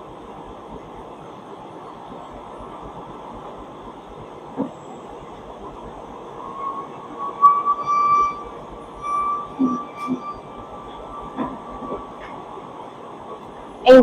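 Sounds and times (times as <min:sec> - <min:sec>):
machinery humming: 0:00.3 - 0:14.0
high wavering whine: 0:04.6 - 0:13.9.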